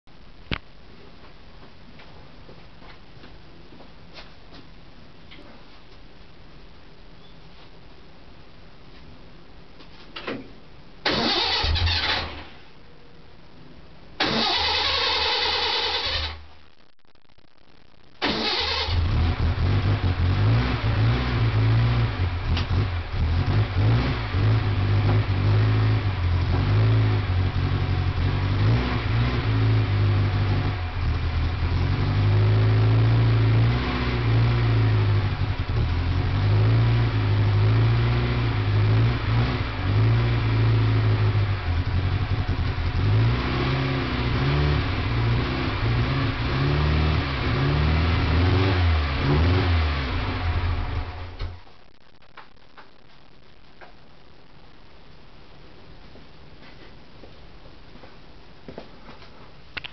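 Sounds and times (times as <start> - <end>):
four-cylinder engine revving: 11.0 - 12.4, 14.2 - 16.4, 18.2 - 51.5.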